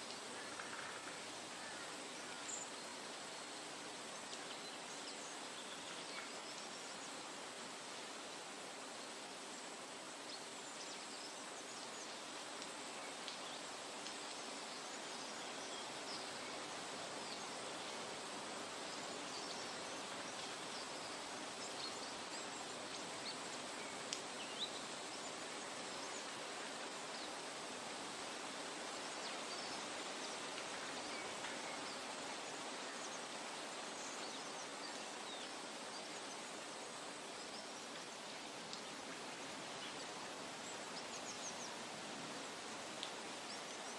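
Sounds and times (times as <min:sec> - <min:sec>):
steady rushing hiss: 0:00.0 - 0:43.9
faint clicks: 0:12.5 - 0:14.4, 0:24.1 - 0:24.3, 0:38.7 - 0:38.9.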